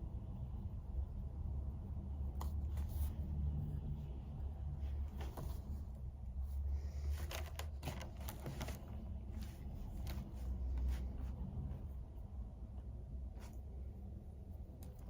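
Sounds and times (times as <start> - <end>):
low steady hum: 0.0 - 15.0
paper rustling and scratching: 4.8 - 6.0, 6.9 - 11.9.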